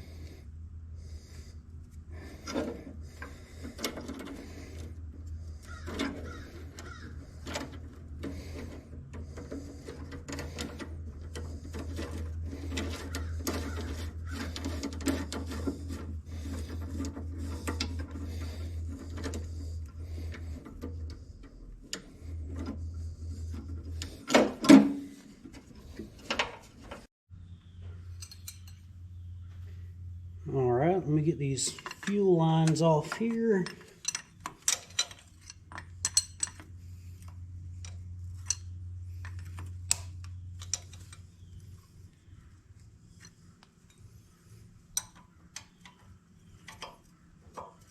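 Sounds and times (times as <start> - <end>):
steady low hum: 0.0 - 47.9
hand tools clinking on metal: 28.1 - 28.9, 31.4 - 36.7.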